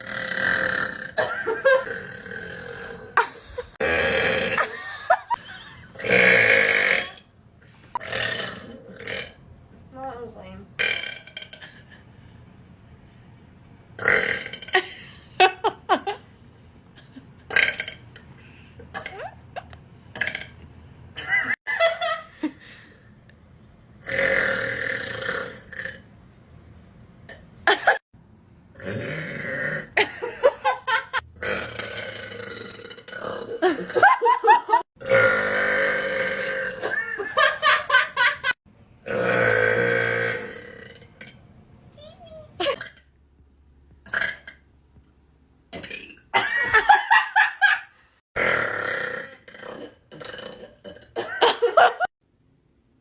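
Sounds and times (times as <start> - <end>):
person burping deeply: 0.0 - 7.3, 8.0 - 9.4, 10.8 - 11.9, 14.0 - 14.9, 17.4 - 19.4, 20.1 - 20.6, 24.0 - 26.1, 28.8 - 37.5, 38.4 - 41.4, 42.6 - 43.1, 44.0 - 44.6, 45.7 - 46.8, 48.4 - 51.5.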